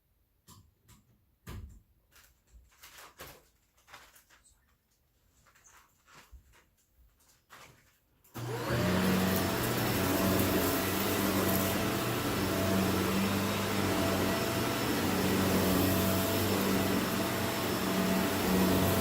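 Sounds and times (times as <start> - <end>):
vacuum cleaner motor whining: 8.4 - 19.0.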